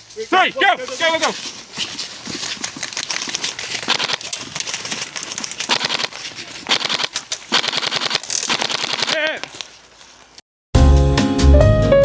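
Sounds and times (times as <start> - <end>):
rustling: 0.0 - 10.4
sharp clicks: 2.5 - 9.7.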